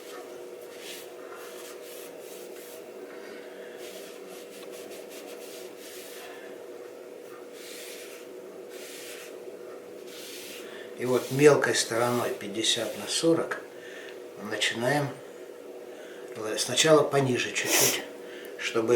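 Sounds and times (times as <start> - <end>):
rubbing strokes on peeler blade: 0.7 - 2.9, 3.8 - 6.4, 7.5 - 9.4, 10.0 - 13.4.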